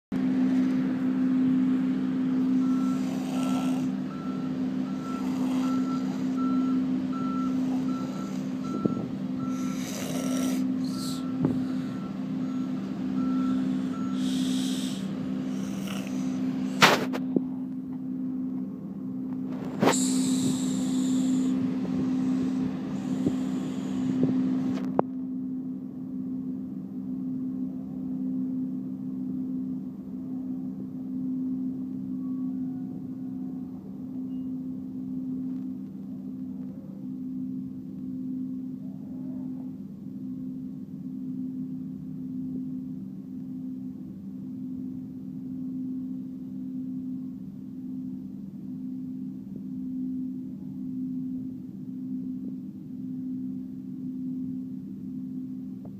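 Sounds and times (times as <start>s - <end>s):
steady low hum: 0.1s - 55.9s
person snoring: 2.7s - 4.0s, 5.0s - 6.6s, 7.4s - 8.7s, 9.4s - 12.0s, 13.5s - 16.9s, 19.8s - 24.2s.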